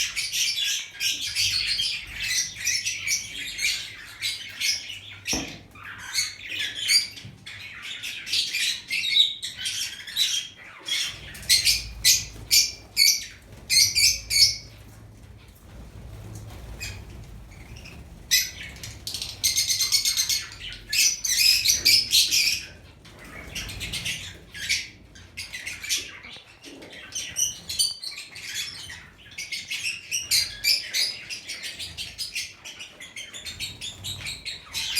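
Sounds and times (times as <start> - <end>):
birds chirping: 0.0 - 34.9.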